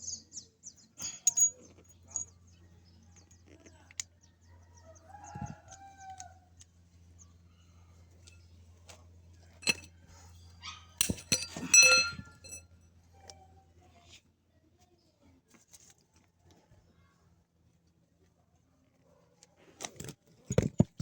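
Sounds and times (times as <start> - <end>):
low steady hum: 9.6 - 9.9, 10.6 - 12.6.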